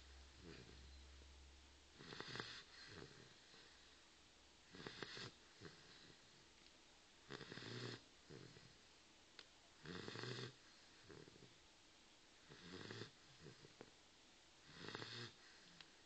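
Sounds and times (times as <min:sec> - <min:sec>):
dog snoring: 0:00.3 - 0:01.0, 0:02.0 - 0:03.8, 0:04.7 - 0:06.4, 0:07.2 - 0:08.8, 0:09.8 - 0:11.6, 0:12.4 - 0:13.9, 0:14.6 - 0:15.7.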